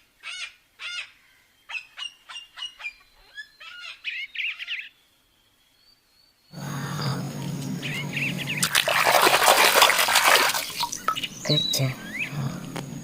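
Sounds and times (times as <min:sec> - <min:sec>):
bird chirps: 0:00.8 - 0:08.8, 0:10.7 - 0:12.7
nasal bird calls: 0:06.5 - 0:12.8
bird warbling trill: 0:10.2 - 0:12.4.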